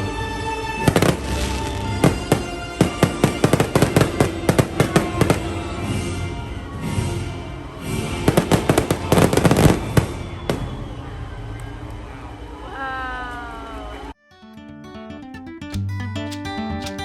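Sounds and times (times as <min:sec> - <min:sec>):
music playing: 0:00.0 - 0:12.5, 0:14.2 - 0:17.0
fireworks bangs and crackles: 0:00.8 - 0:12.0.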